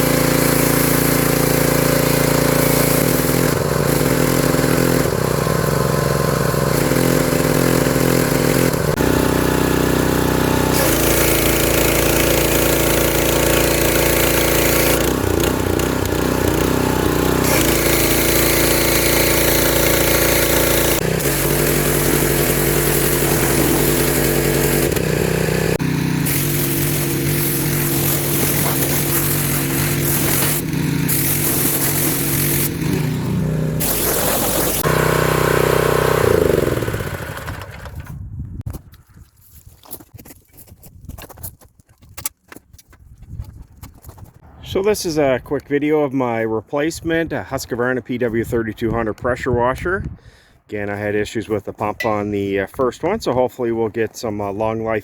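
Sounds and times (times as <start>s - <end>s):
pressure washer engine running: 0.0s - 38.0s.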